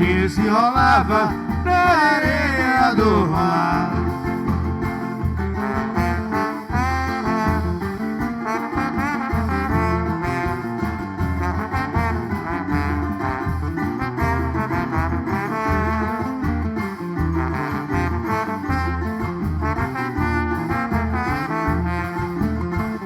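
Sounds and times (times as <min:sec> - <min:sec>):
band playing instrumental: 0:00.0 - 0:23.0.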